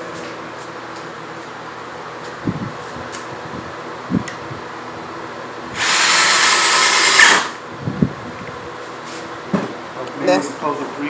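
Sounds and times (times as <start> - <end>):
power drill drilling into wood: 5.8 - 7.6.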